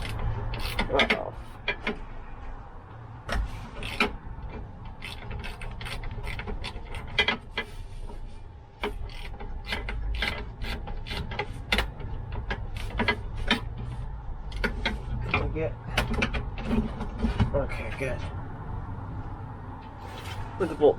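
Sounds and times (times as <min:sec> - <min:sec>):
ratchet wrench clicking: 0:00.0 - 0:01.6, 0:03.8 - 0:04.2, 0:04.8 - 0:07.2, 0:08.8 - 0:12.0.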